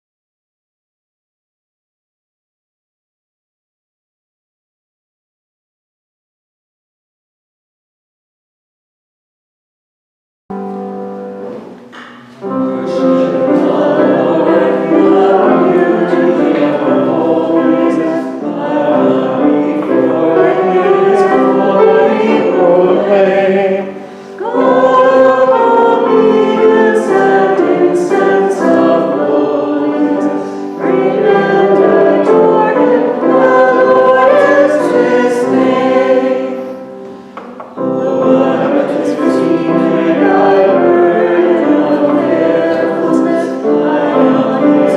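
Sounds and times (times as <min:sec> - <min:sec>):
choir singing: 0:10.6 - 0:44.9.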